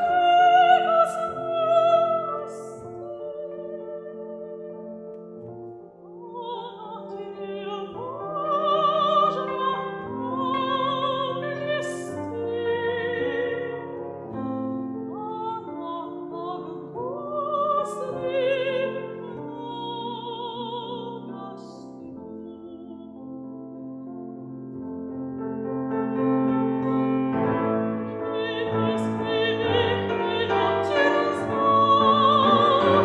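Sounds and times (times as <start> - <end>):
classical singing with vibrato: 0.0 - 23.9, 26.4 - 33.0
piano accompaniment: 0.0 - 33.0.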